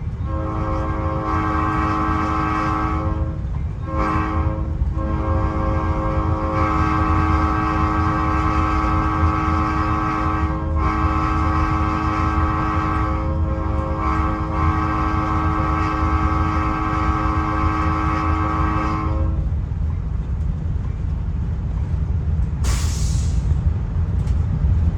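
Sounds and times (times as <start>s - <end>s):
locomotive low rumble: 0.0s - 24.9s
locomotive horn chord: 0.2s - 19.4s
short hiss: 22.6s - 23.6s.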